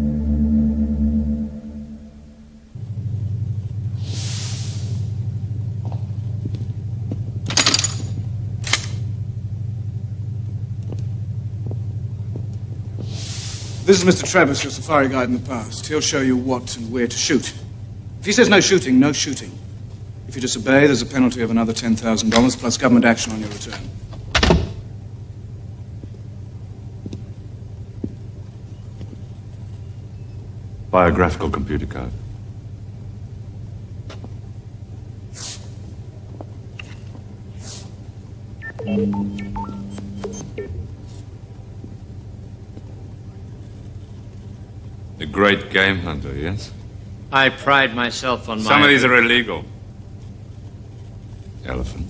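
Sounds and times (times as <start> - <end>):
low pulsing hum: 0.0 - 13.8, 32.2 - 45.2
hiss bursts: 4.0 - 5.2, 13.0 - 13.9.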